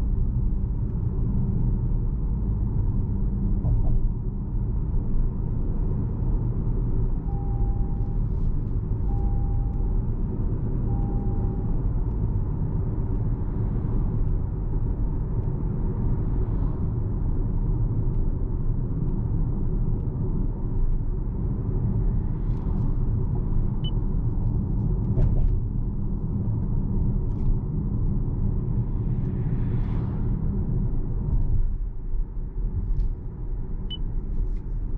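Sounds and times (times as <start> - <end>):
car road rumble: 0.0 - 34.9
short electronic beeps: 7.3 - 8.2, 9.1 - 10.0, 10.9 - 11.8.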